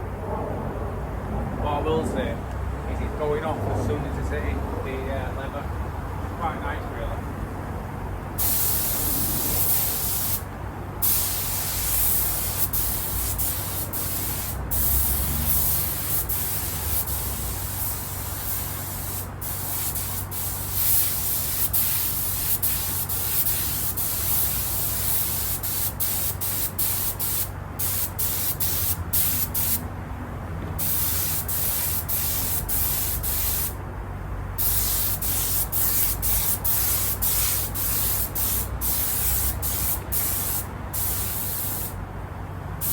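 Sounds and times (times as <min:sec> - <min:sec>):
spray gun hissing: 0:08.4 - 0:29.8, 0:30.8 - 0:33.8, 0:34.6 - 0:42.0.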